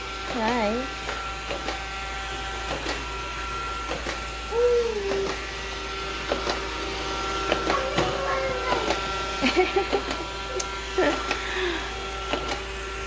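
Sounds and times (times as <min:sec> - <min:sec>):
robot vacuum motor hum: 0:00.0 - 0:13.0
child cooing and squealing: 0:04.5 - 0:05.5, 0:07.6 - 0:09.2.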